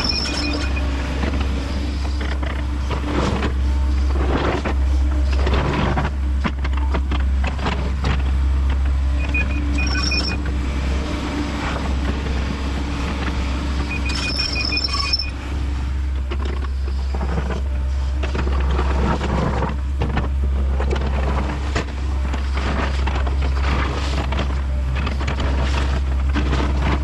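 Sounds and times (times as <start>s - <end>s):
high beeps: 0.0s - 0.9s, 9.1s - 10.5s, 13.8s - 15.4s
excavator diesel engine running: 0.0s - 27.0s.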